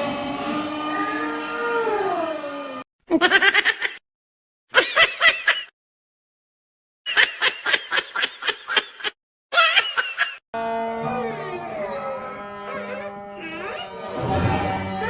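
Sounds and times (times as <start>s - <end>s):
sped-up cartoon voice laughing: 3.1s - 4.0s.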